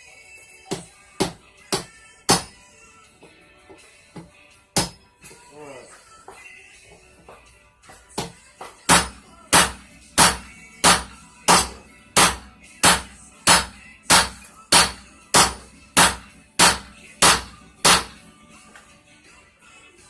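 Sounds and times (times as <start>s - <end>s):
hammer striking metal on anvil: 8.9s - 18.2s.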